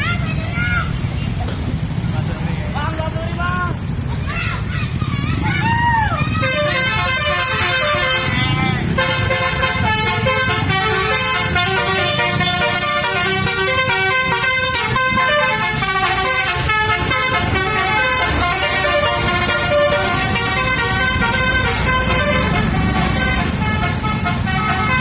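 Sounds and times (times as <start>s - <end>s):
bus engine rumble: 0.0s - 25.0s
musical bus horn melody: 6.3s - 25.0s.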